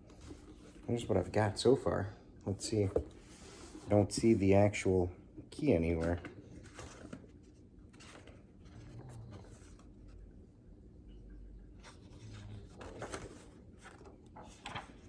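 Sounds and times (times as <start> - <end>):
packing paper rustling: 11.9 - 15.0.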